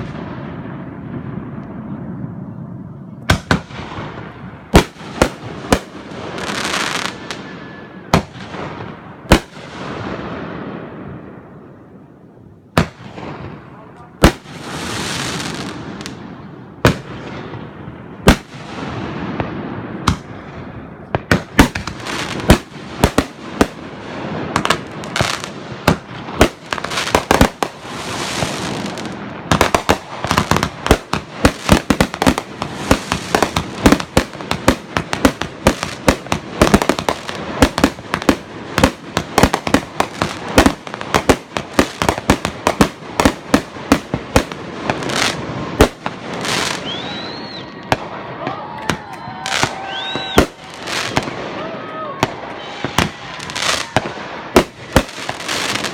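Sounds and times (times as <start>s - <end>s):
fireworks bursting with sharp bangs: 0.0s - 55.9s
fireworks hissing trails: 14.2s - 17.6s, 18.3s - 44.2s.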